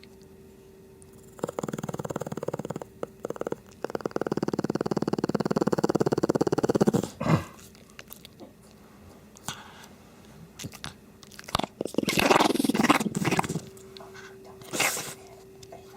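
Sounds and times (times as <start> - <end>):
dog snoring with fluttering rattle: 1.0 - 7.2, 11.5 - 13.8
dog mouth smacking and chewing: 1.1 - 7.0, 7.6 - 8.5, 10.6 - 13.7.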